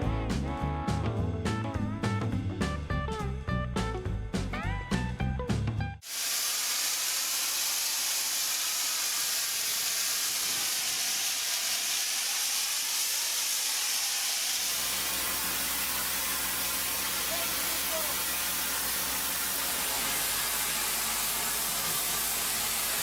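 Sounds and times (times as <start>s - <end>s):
music: 0.0s - 6.0s
steady hiss: 6.0s - 23.0s.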